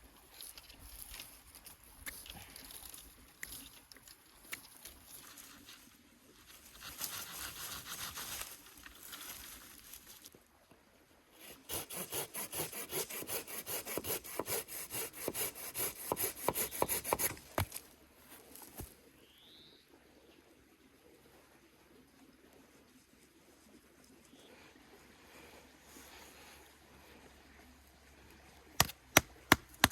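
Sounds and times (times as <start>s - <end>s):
rustling: 2.4s - 10.3s
hand saw cutting wood: 11.4s - 17.8s, 28.8s - 29.9s.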